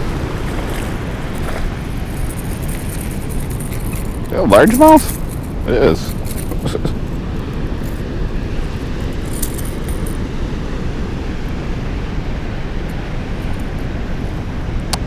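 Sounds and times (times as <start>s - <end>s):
water rushing over spillway: 0.0s - 3.4s.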